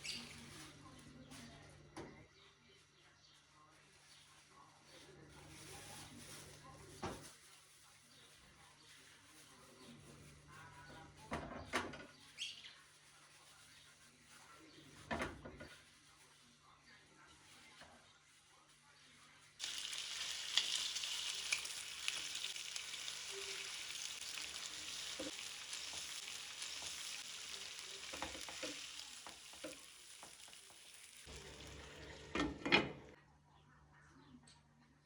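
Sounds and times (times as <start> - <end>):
food sizzling in oil: 19.6 - 32.6
stirring knocks and scrapes: 20.6 - 33.2.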